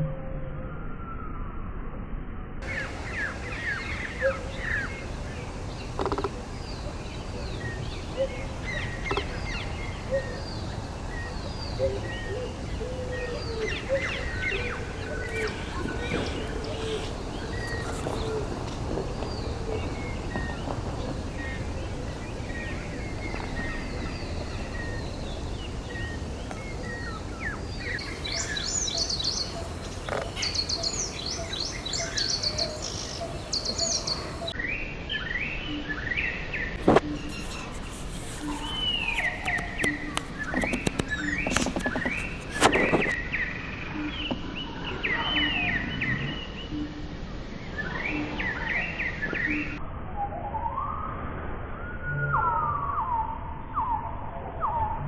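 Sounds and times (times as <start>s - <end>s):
wild birds chirping and calling: 15.3s - 18.7s, 28.0s - 34.6s, 36.8s - 43.2s.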